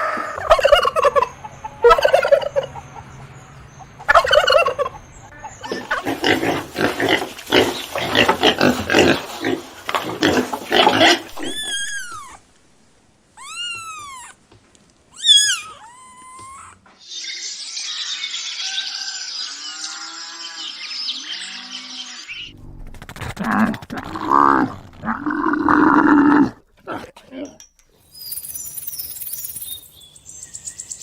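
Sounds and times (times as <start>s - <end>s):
high-pitched animal calls: 0.0s - 3.1s, 11.0s - 12.5s, 13.4s - 14.4s, 15.1s - 22.6s
animal grunting calls: 5.4s - 12.4s, 22.3s - 27.6s
rasping animal call: 10.2s - 12.4s.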